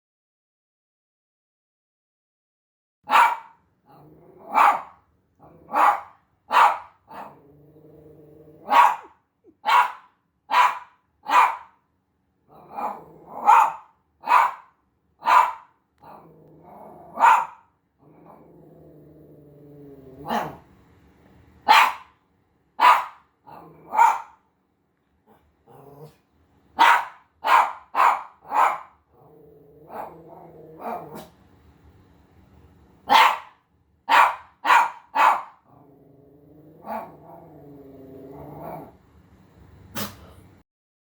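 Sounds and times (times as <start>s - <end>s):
small dog barking: 3.1s - 7.4s, 8.6s - 11.8s, 12.5s - 16.2s, 17.1s - 17.7s, 20.2s - 20.6s, 21.6s - 22.2s, 22.8s - 24.4s, 26.8s - 29.0s, 33.1s - 35.6s
dog growling: 3.9s - 6.0s, 7.1s - 9.6s, 12.5s - 13.8s, 16.0s - 20.7s, 23.5s - 24.3s, 25.3s - 26.3s, 28.5s - 31.4s, 35.6s - 39.0s.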